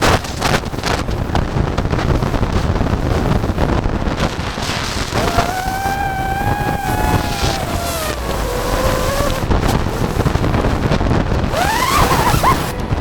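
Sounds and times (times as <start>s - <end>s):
wind on microphone: 0.0s - 13.0s
quadcopter motor whine: 5.1s - 13.0s.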